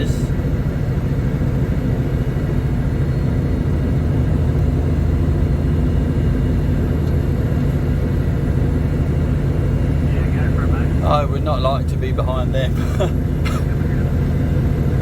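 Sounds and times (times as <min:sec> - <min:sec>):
diesel truck engine under load: 0:00.0 - 0:15.0.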